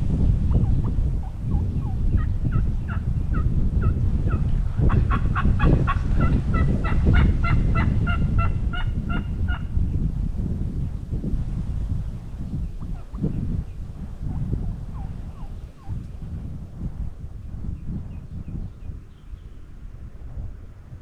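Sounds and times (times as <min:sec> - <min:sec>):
wind rumble on microphone: 0:00.0 - 0:21.0
turkey yelping: 0:04.9 - 0:09.7.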